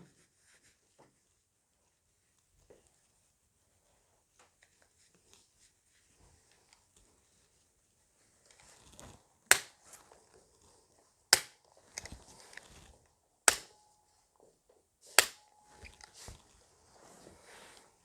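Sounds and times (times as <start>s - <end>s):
adjusting instrument clicks: 13.5s - 13.7s.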